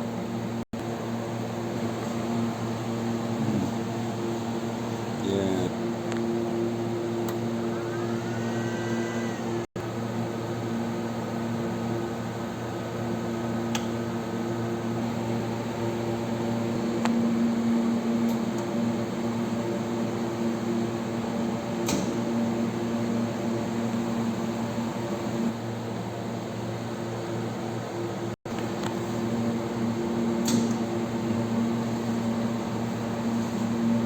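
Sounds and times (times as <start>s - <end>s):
cooling fan whirring: 0.0s - 34.0s
inverter electrical hum: 0.0s - 34.0s.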